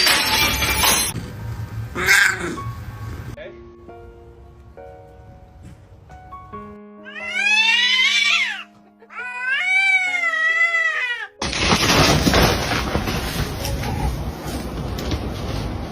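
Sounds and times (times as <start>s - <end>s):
background music: 0.0s - 12.5s
cat meowing: 7.0s - 11.4s.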